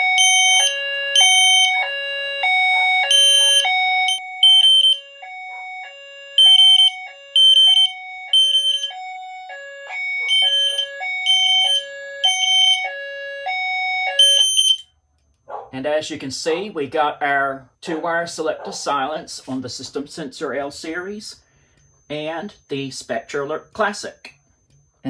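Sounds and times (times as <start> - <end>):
alternating two-pitch alarm tone: 0.0 - 15.0
fire alarm high beeps: 0.0 - 15.0, 20.6 - 25.0.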